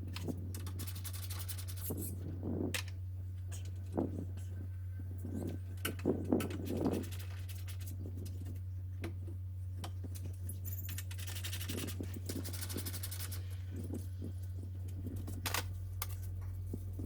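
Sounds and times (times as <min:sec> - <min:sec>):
steady low hum: 0:00.0 - 0:17.0
scratchy rattle: 0:05.2 - 0:08.6, 0:10.7 - 0:14.4.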